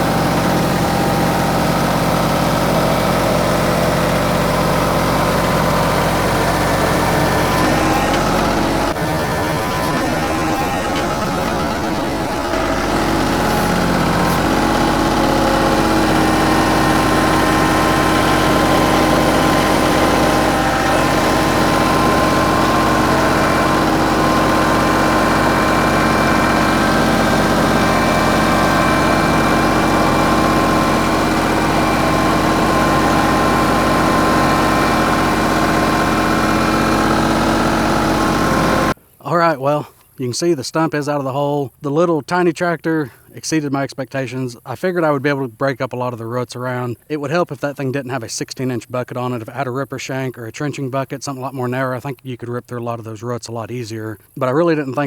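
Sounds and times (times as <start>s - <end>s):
tractor diesel engine running: 0.0s - 39.1s.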